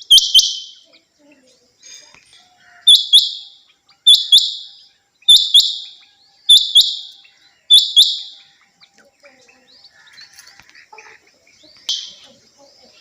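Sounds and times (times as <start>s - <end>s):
quail calling: 0.0s - 1.1s, 2.4s - 9.0s.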